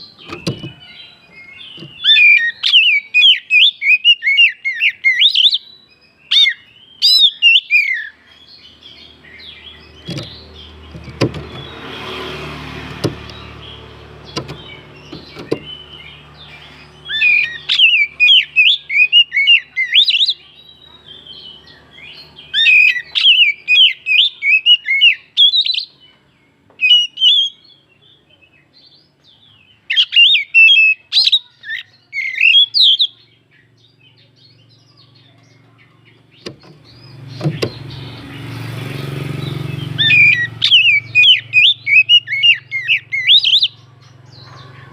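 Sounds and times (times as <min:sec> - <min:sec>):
bird singing whistled phrases: 0:00.0 - 0:08.3, 0:16.8 - 0:26.0, 0:26.8 - 0:29.0, 0:29.8 - 0:35.6, 0:39.5 - 0:44.6
sharp clicks: 0:14.3 - 0:15.7.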